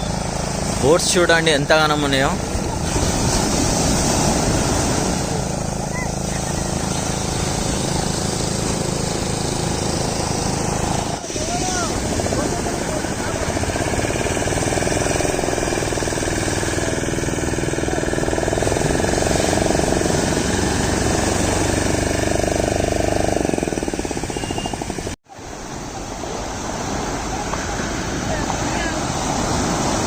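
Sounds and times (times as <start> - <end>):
engine knocking: 11.9 - 25.2.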